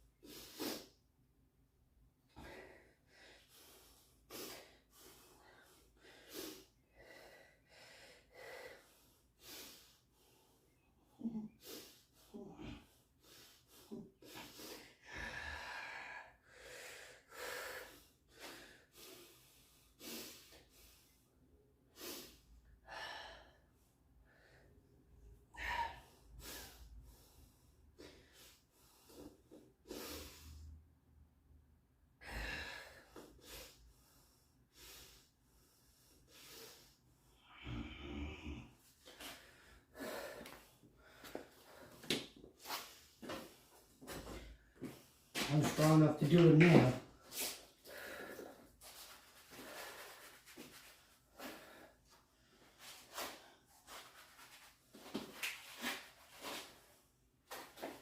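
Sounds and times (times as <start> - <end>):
man breathing hard and gasping: 32.2 - 46.0, 46.8 - 54.1.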